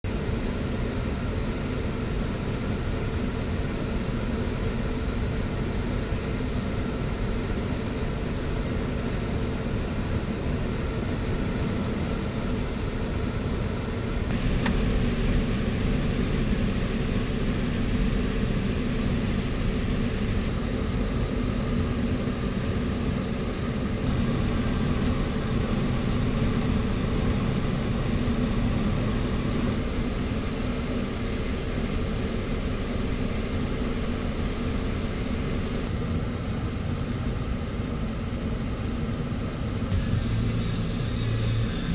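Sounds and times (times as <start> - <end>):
steady hums: 3.8 - 36.9, 38.7 - 41.9
vehicle engine and road drone: 12.8 - 30.5, 38.8 - 41.9.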